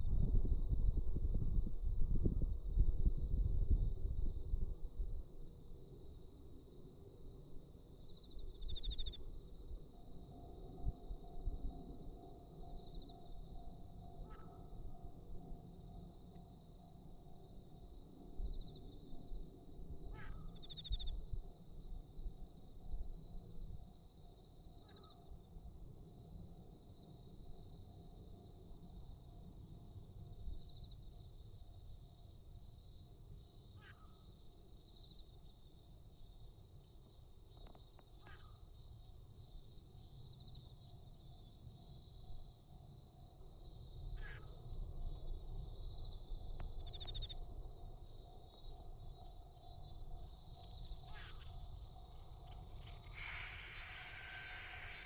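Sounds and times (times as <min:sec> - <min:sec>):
pulsing insect chorus: 0:00.0 - 0:55.0
stuttering high-pitched insect: 0:20.0 - 0:21.3, 0:32.8 - 0:55.0.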